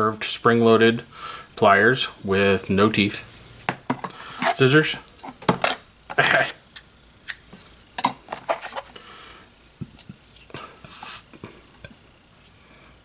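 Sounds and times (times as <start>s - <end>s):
metal hand tools clinking: 4.0s - 6.2s.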